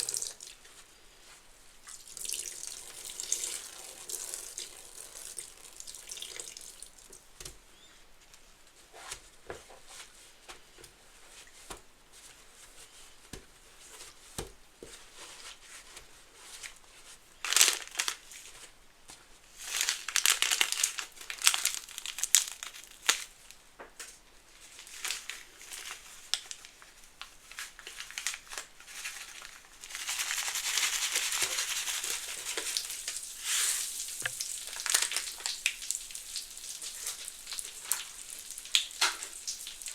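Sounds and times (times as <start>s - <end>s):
soapy sponge crackling and fizzing: 1.8s - 7.2s, 19.6s - 23.5s, 24.6s - 39.9s.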